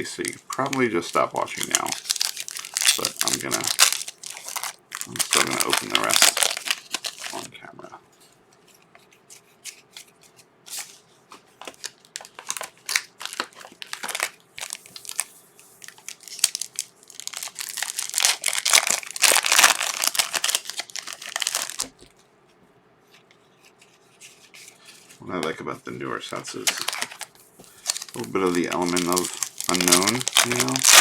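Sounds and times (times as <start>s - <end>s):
wrapper tearing and crinkling: 0.0s - 7.5s, 11.6s - 22.0s, 26.3s - 31.0s.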